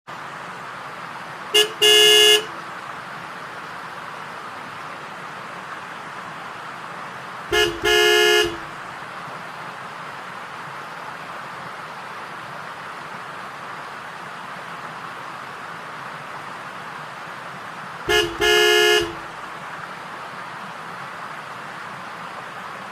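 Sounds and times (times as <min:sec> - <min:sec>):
steady hiss: 0:00.1 - 0:22.9
horn honking: 0:01.5 - 0:02.6, 0:07.5 - 0:08.8, 0:18.1 - 0:19.4.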